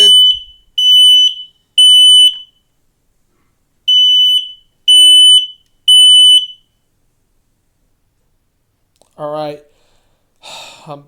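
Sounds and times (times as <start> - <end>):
smoke alarm beeping: 0.0 - 2.7, 3.9 - 6.8.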